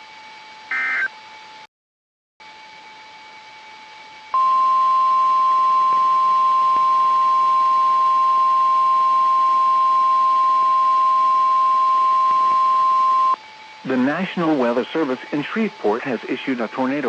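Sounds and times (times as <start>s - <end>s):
loud steady alarm tone: 0.7s - 1.2s, 4.3s - 14.7s.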